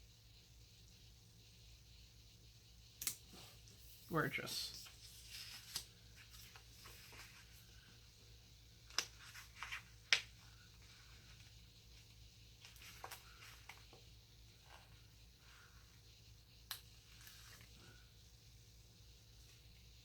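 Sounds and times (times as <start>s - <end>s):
paper rustling: 4.7s - 7.7s, 8.8s - 14.0s, 17.0s - 18.0s.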